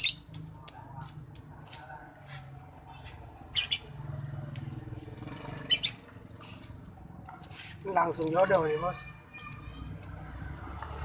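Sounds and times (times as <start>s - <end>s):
lovebirds chirping: 0.0s - 1.9s, 3.5s - 4.0s, 5.0s - 10.2s.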